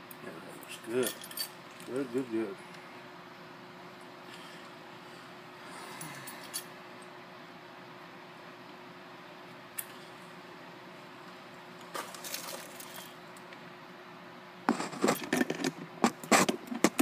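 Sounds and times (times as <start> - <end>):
metal hardware clinking: 1.0 - 1.6.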